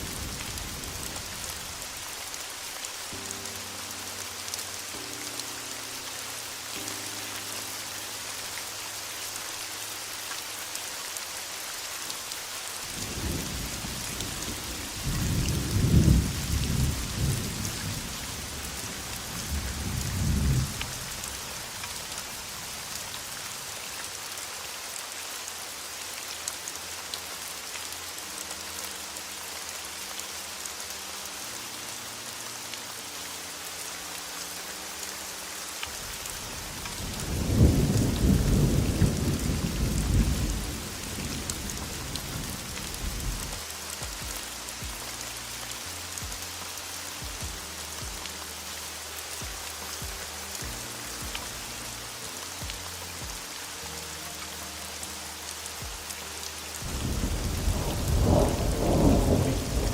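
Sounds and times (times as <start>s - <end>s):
heavy rain falling: 0.0s - 59.9s
thunder rumbling: 12.9s - 21.2s, 36.6s - 43.6s, 56.8s - 59.9s.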